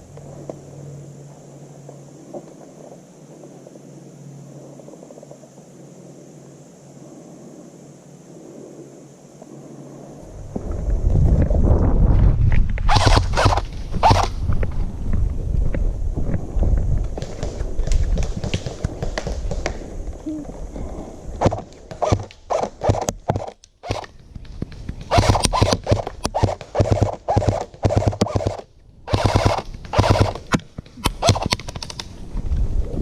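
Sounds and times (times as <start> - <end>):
rustling and movement: 8.4 - 33.0
airsoft gun firing bursts: 12.9 - 14.4, 21.4 - 24.1, 25.0 - 32.0.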